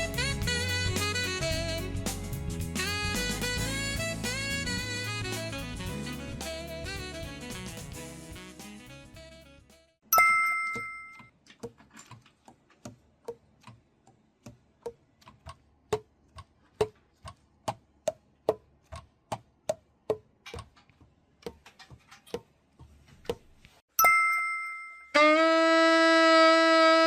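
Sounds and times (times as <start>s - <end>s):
short bell-like ding: 10.1s - 11.3s, 24.0s - 25.2s.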